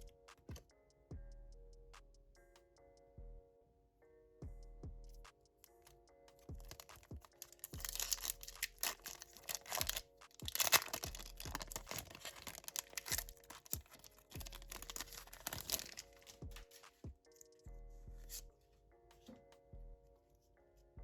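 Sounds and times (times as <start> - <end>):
foil pack tearing and crinkling: 6.7 - 16.8.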